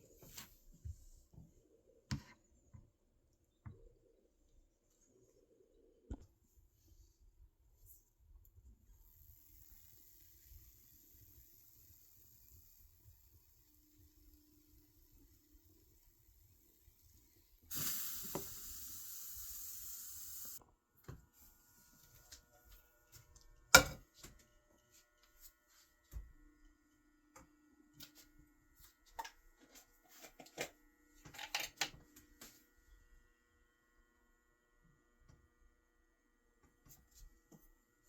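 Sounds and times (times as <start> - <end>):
steady hiss: 9.0 - 20.6.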